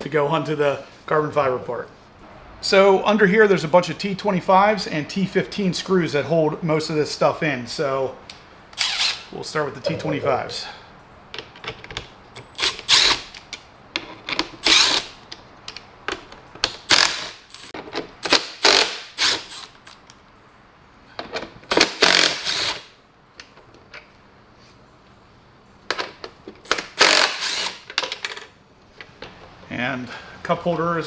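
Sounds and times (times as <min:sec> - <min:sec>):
power screwdriver running: 0:08.8 - 0:09.3, 0:12.6 - 0:13.2, 0:14.6 - 0:15.1, 0:16.9 - 0:17.7, 0:22.0 - 0:22.8, 0:26.9 - 0:27.8
plastic parts clattering: 0:27.8 - 0:28.5.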